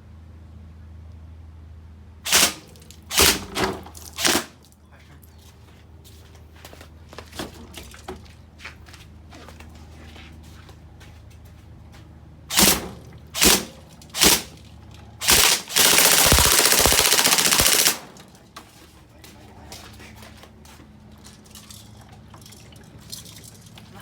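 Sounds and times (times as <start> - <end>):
airsoft rifle firing bursts: 2.3 - 4.5, 12.5 - 14.5, 15.2 - 18.2.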